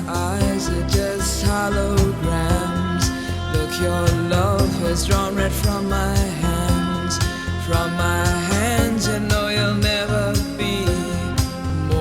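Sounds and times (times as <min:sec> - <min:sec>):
instrumental pop music: 0:00.0 - 0:12.0.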